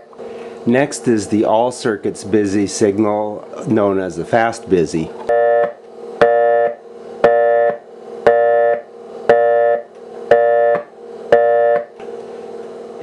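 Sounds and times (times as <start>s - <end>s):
faint hum: 0.0s - 13.0s
buzzy busy signal tone: 5.3s - 12.0s.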